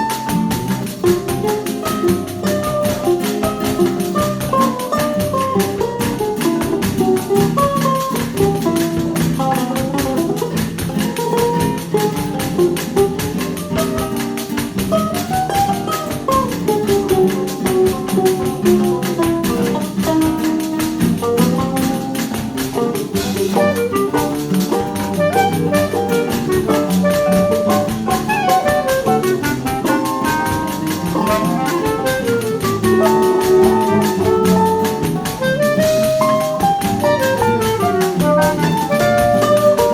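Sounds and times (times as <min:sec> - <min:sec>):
bandolim: 0:00.0 - 0:39.9
clarinet melody: 0:00.0 - 0:39.9
drum kit: 0:00.0 - 0:39.9
pandeiro rhythm: 0:00.0 - 0:39.9
plucked guitars: 0:00.0 - 0:39.9
tuba bass: 0:22.8 - 0:39.9.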